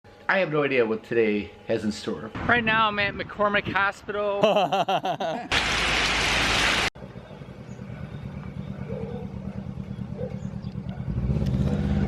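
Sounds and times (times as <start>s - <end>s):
rain hiss: 5.5s - 6.9s
vehicle engine low pulsing rumble: 7.0s - 12.0s.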